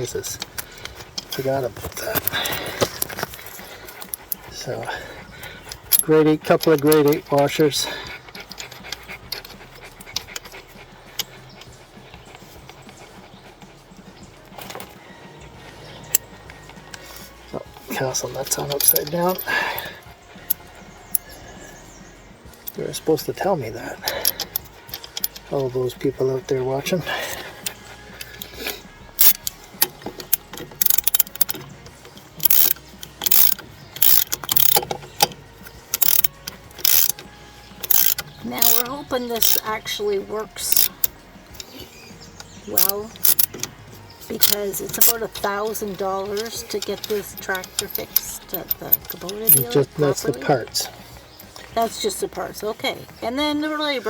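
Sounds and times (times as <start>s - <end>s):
dog panting: 0.0s - 31.7s
small metal parts clicking: 0.3s - 11.7s, 18.1s - 21.4s, 24.1s - 26.0s, 27.0s - 41.8s, 42.4s - 50.5s.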